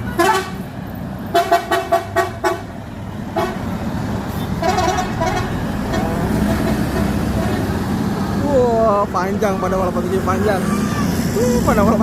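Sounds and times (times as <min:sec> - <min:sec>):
bus horn short toots: 0:00.0 - 0:00.7, 0:01.3 - 0:02.7, 0:04.6 - 0:07.1
engines and traffic rumble: 0:00.0 - 0:12.0.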